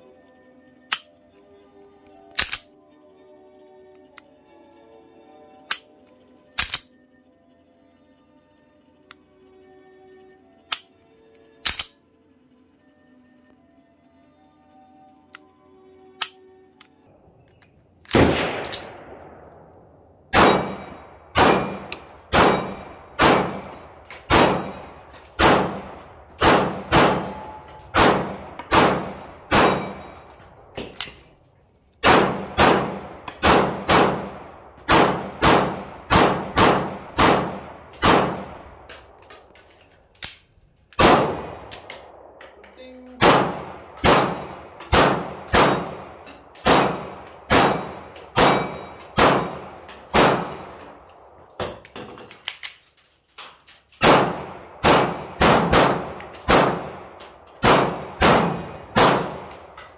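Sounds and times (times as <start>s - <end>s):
pistol shots: 18.1s - 31.3s, 32.0s - 39.2s, 41.0s - 42.6s, 43.2s - 52.0s, 54.0s - 59.9s.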